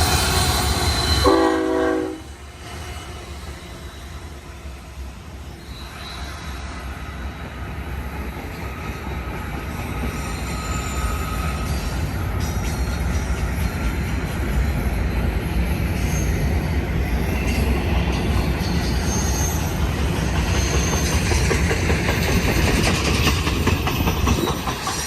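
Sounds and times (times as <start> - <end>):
freight train cars rumbling: 0.0 - 25.0
wheel squeal: 5.4 - 7.2, 9.8 - 13.3
wheels clicking over rail joints: 19.6 - 25.0.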